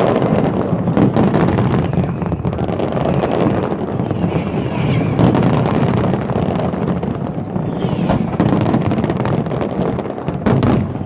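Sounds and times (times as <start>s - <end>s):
fireworks bangs: 0.0s - 11.0s
fireworks crackling: 0.0s - 11.0s
low rumble: 3.8s - 9.0s.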